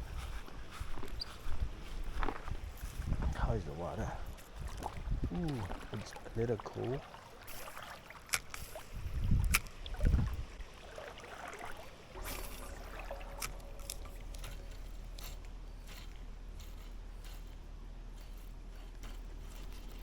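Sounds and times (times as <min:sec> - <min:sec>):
river water sloshing and trickling: 0:02.8 - 0:20.0
steady low hum: 0:08.7 - 0:20.0.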